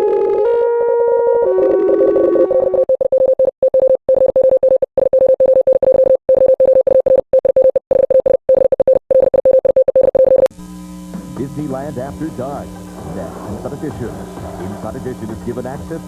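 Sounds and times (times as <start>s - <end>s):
stuttering electronic tone: 11.2s - 16.0s.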